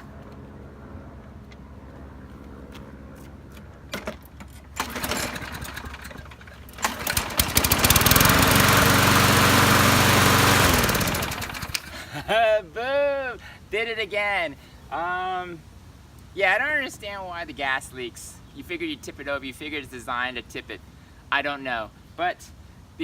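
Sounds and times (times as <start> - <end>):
pull starter: 4.0 - 11.9
lawn mower engine running: 4.0 - 12.0.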